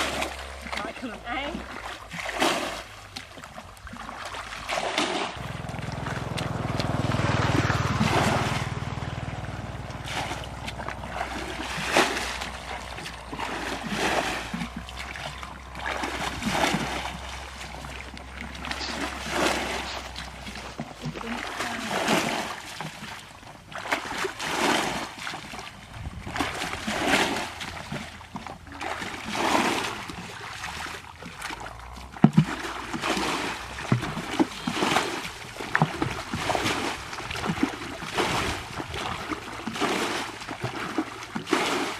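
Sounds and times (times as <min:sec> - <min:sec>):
water splashing and sloshing: 0:00.0 - 0:41.9
low steady hum: 0:05.4 - 0:29.2.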